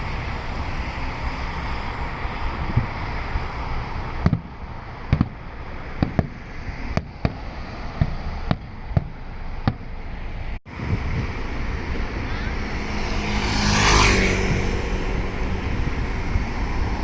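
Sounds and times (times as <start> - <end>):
fireworks bangs: 4.1 - 10.0.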